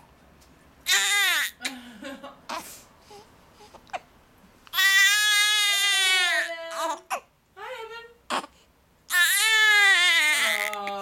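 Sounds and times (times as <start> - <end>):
baby crying: 0.9 - 1.6, 4.7 - 7.3, 8.3 - 8.5, 9.1 - 11.0.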